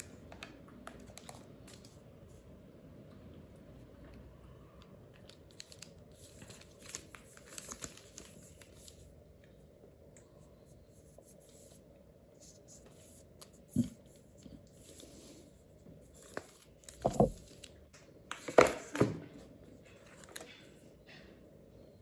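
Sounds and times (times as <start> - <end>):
packaging rustling: 5.5 - 8.9
box knocking: 17.0 - 17.4.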